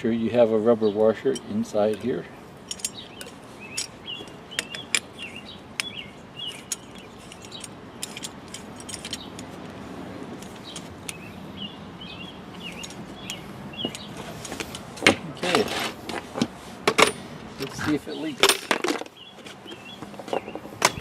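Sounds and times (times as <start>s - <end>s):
small bird chirping: 2.8s - 8.2s, 10.4s - 14.2s, 19.1s - 21.0s
clicks of hose fittings: 12.7s - 17.2s.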